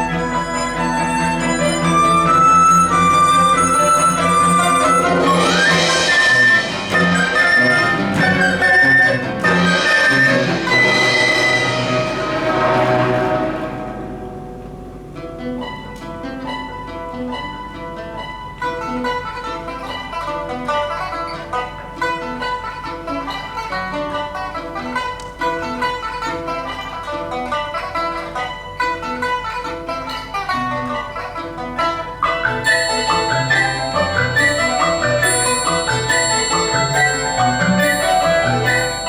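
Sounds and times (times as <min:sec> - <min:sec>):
plucked strings repeating figure: 0:00.0 - 0:39.0
loud ringing chord: 0:01.4 - 0:15.6, 0:32.6 - 0:39.0.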